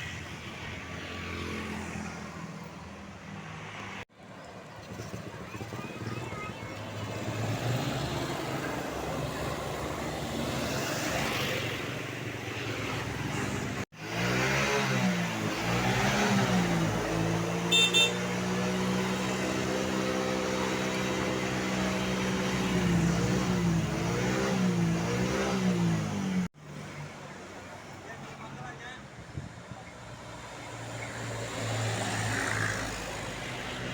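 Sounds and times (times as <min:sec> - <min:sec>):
traffic noise: 0:00.0 - 0:33.9
bus horn playing warbling tune: 0:17.7 - 0:18.3.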